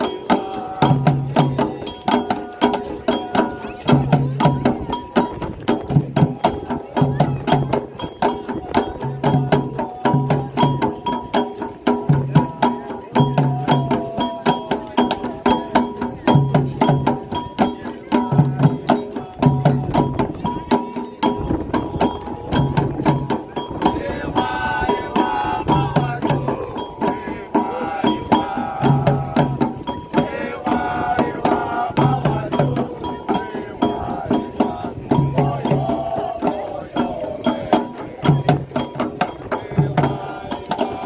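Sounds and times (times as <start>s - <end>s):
fast ticking beat: 0.0s - 41.0s
hand drums beating: 0.0s - 41.0s
voices singing a chant: 0.0s - 41.0s.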